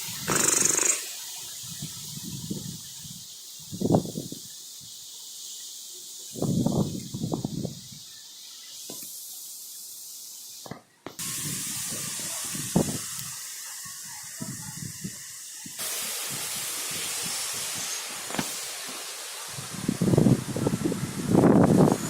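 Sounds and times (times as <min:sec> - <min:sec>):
rain hiss: 0:00.0 - 0:22.0
gusting wind rumbling: 0:19.5 - 0:22.0.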